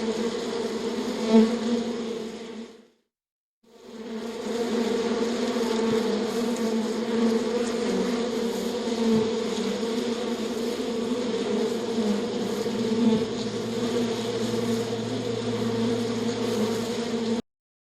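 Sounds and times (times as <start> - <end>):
insect buzzing in flight: 0.0 - 3.0, 3.7 - 17.4
lower steady hum: 12.3 - 17.3.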